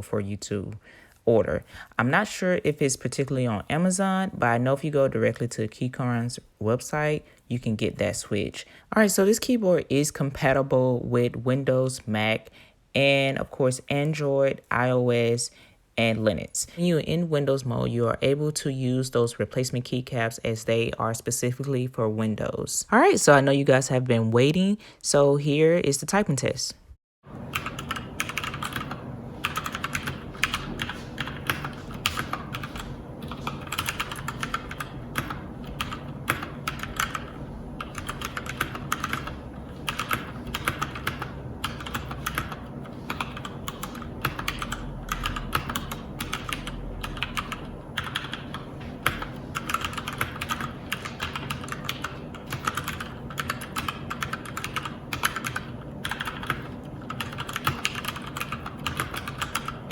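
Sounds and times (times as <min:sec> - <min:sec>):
mechanical keyboard typing: 0:27.5 - 0:59.9.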